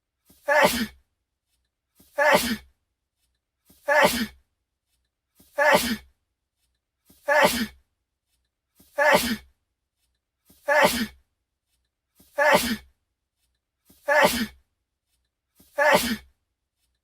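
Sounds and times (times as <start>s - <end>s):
man sneezing: 0.4s - 1.0s, 2.2s - 2.6s, 3.8s - 4.4s, 5.6s - 6.0s, 7.2s - 7.8s, 9.0s - 9.4s, 10.7s - 11.2s, 12.4s - 12.9s, 14.1s - 14.6s, 15.8s - 16.3s.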